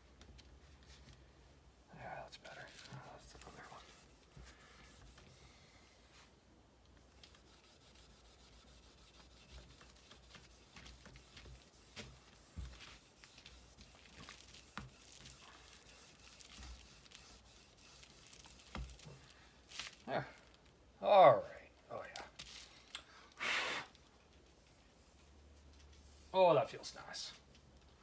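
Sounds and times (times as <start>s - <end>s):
steel wool rubbing on wood: 0.8s - 6.3s, 7.0s - 20.0s, 24.5s - 27.4s.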